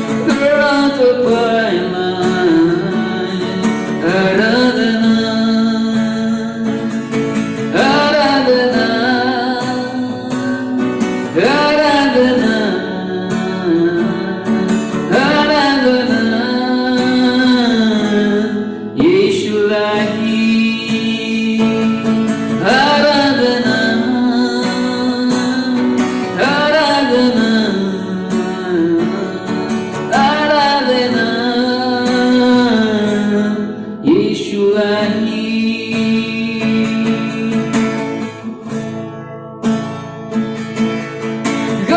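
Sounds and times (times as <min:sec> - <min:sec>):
person singing: 0:00.0 - 0:38.8, 0:41.6 - 0:41.9
strummed acoustic guitar: 0:00.0 - 0:41.9.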